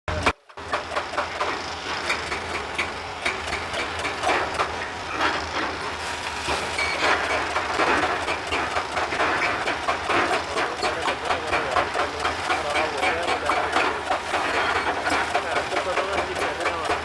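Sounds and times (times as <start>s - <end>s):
excavator engine hum: 0.1s - 17.0s
metallic clanks of rock and steel: 6.5s - 17.0s.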